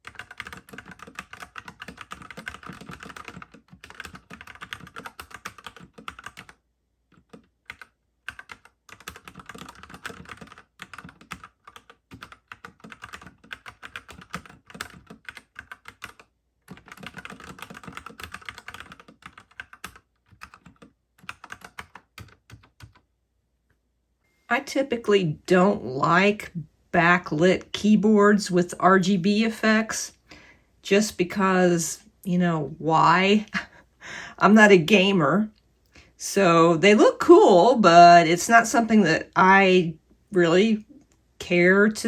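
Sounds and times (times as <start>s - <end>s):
mechanical keyboard typing: 0.0s - 23.1s.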